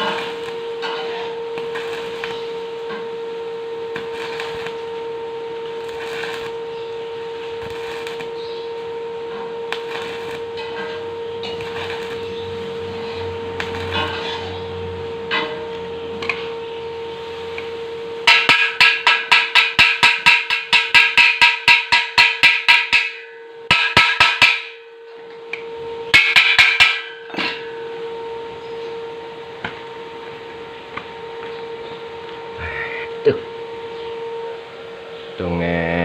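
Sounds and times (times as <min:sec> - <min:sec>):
steady hum: 0:00.0 - 0:36.0
hammer striking steel tubing: 0:18.2 - 0:24.9, 0:26.1 - 0:27.8.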